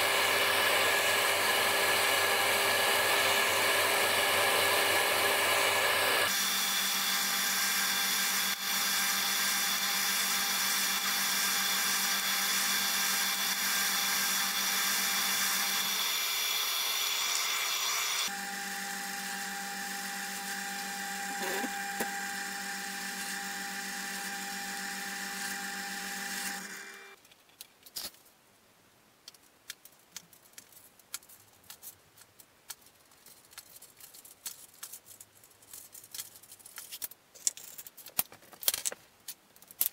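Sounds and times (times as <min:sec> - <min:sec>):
electric power tool motor running: 0:00.0 - 0:27.2.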